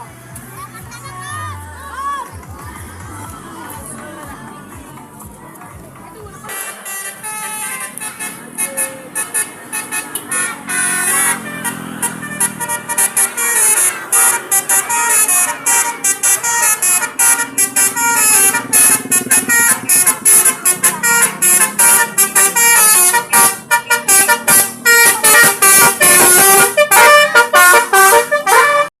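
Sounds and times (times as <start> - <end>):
multi-tone bus horn melody: 6.4 - 29.0.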